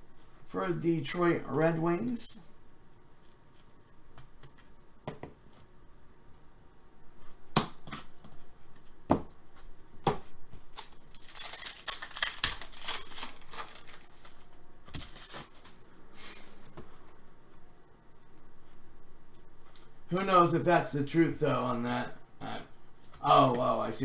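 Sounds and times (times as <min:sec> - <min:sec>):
packaging crinkling and rustling: 0:10.6 - 0:15.8.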